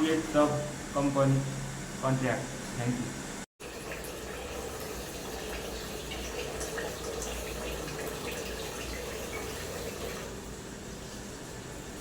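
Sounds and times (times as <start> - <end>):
water running from tap into sink: 3.6 - 10.4.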